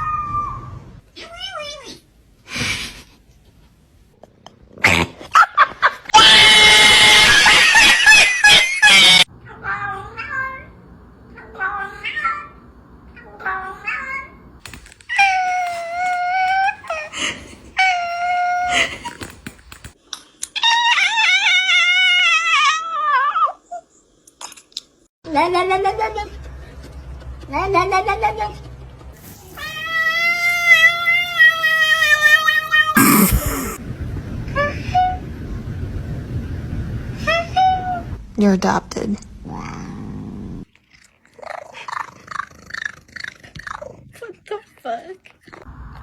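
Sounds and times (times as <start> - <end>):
cat yowling: 29.4 - 33.8.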